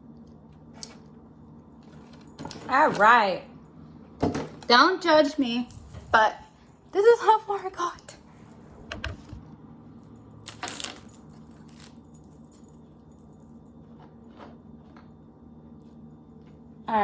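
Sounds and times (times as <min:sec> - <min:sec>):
rattling clatter of pieces: 0:01.9 - 0:03.1, 0:10.4 - 0:12.7.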